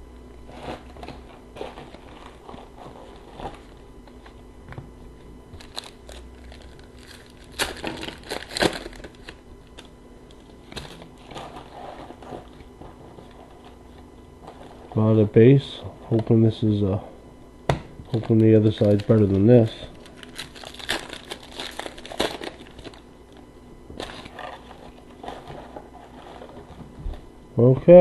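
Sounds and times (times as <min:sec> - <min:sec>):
wrapper crinkling: 0:05.6 - 0:12.6, 0:18.1 - 0:26.7
cards clicking and rustling: 0:18.1 - 0:23.0.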